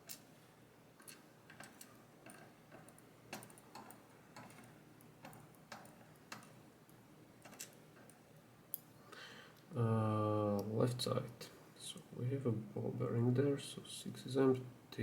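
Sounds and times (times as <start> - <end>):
small clicks and taps of lock parts: 0.0 - 0.3, 1.0 - 8.9.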